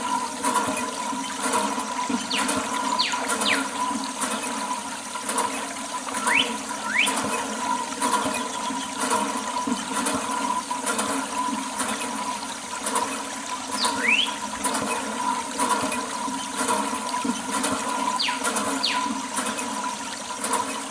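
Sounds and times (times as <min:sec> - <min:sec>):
water rushing and splashing: 0:00.0 - 0:20.9
sliding whistle-like tones: 0:02.2 - 0:03.8, 0:06.1 - 0:07.4, 0:13.7 - 0:14.5, 0:18.2 - 0:19.2.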